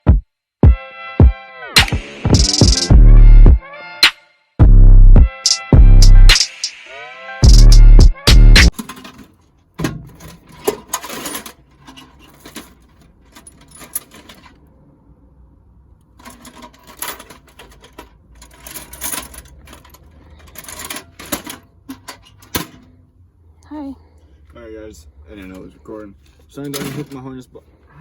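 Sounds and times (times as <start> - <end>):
objects being handled: 8.7 - 14.6, 16.0 - 23.0.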